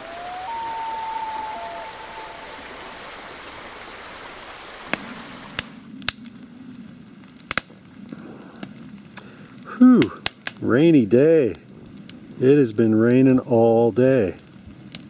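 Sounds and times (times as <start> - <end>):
running water: 0.0 - 6.0
rain hissing: 0.0 - 15.0.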